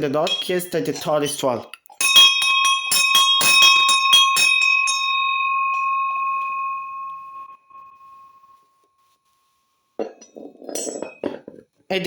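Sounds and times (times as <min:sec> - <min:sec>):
hand bell ringing: 0:02.0 - 0:08.6.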